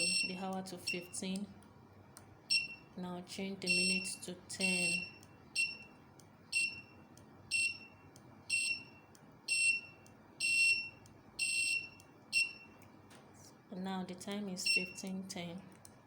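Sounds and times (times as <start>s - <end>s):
alarm clock beeping: 0.0s - 1.2s, 2.5s - 2.9s, 3.6s - 12.8s, 14.6s - 15.0s.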